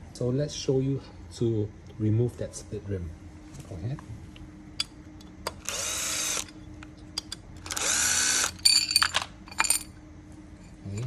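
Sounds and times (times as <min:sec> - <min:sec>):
cordless power driver running: 0:05.5 - 0:06.6, 0:07.6 - 0:08.6.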